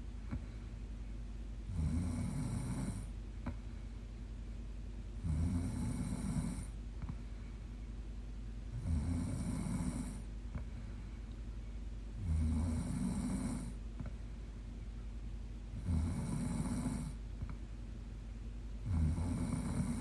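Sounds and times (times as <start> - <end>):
quiet breathing: 0.0 - 4.2, 5.2 - 8.0, 8.7 - 14.9, 15.7 - 17.6, 18.8 - 20.0
woman snoring: 1.7 - 3.1, 5.2 - 6.8, 8.7 - 10.3, 12.2 - 13.8, 15.8 - 17.2, 18.8 - 20.0.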